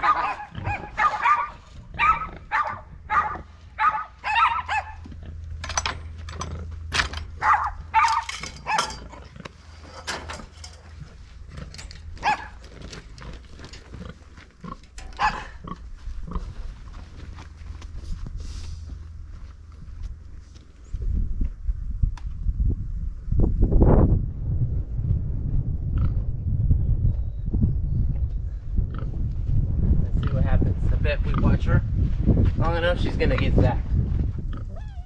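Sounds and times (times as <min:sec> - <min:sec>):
steady low hum: 0:00.0 - 0:35.0
animal high cries: 0:34.7 - 0:35.0.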